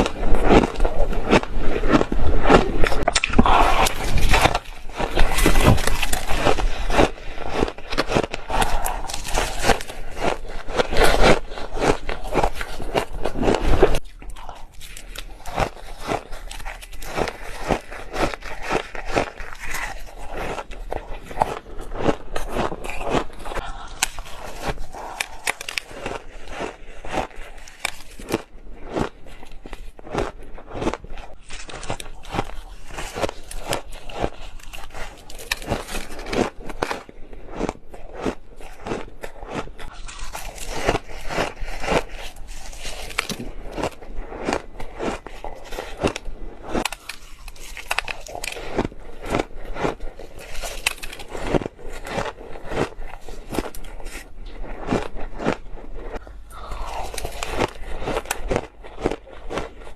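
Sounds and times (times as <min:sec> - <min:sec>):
ice crunching between teeth: 0:00.0 - 0:59.9.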